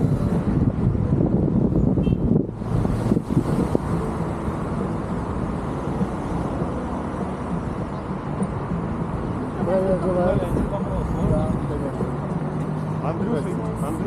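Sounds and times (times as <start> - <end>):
wind rumble on microphone: 0.0 - 4.8
road noise: 0.0 - 14.0.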